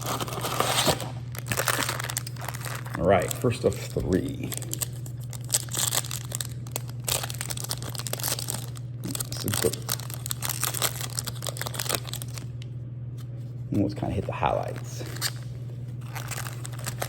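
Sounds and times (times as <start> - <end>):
packaging crinkling and tearing: 0.0 - 12.6, 14.5 - 17.0
steady low hum: 0.0 - 17.0.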